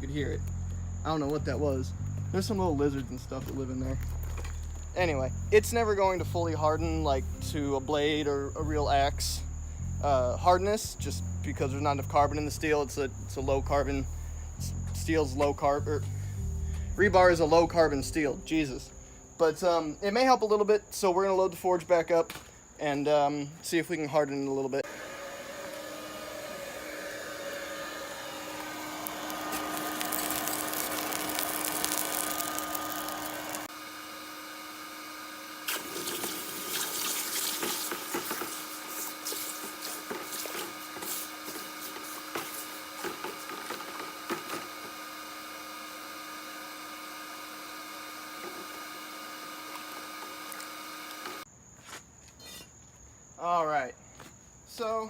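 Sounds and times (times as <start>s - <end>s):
forge blower humming: 24.8s - 51.5s
hot metal sizzling in water: 28.3s - 33.7s, 35.6s - 44.3s.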